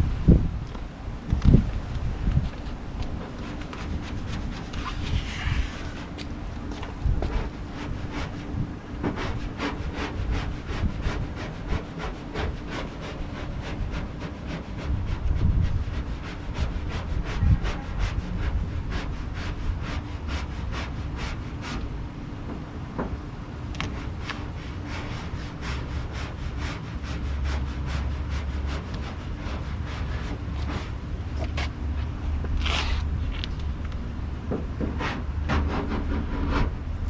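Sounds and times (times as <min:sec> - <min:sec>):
steady low rumble: 0:00.0 - 0:37.0
squeegee scraping vinyl: 0:03.1 - 0:21.8, 0:32.6 - 0:33.6.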